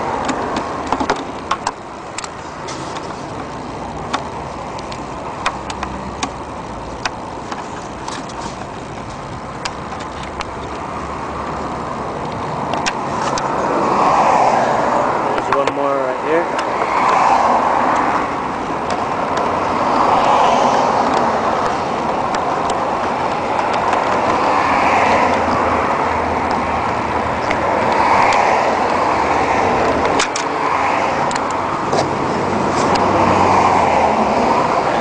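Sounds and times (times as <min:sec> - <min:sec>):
road traffic noise: 0:00.0 - 0:35.0.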